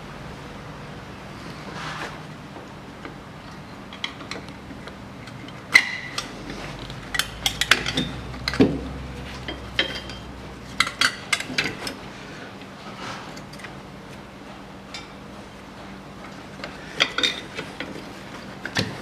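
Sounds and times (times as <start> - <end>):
metal tools clinking: 9.4 - 12.0.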